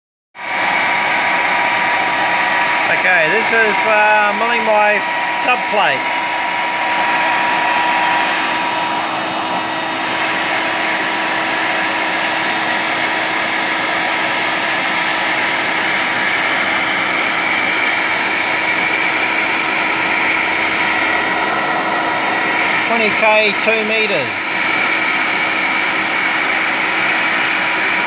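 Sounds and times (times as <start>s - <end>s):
dust collector running: 0.4s - 28.0s
router spindle whine: 0.4s - 28.0s.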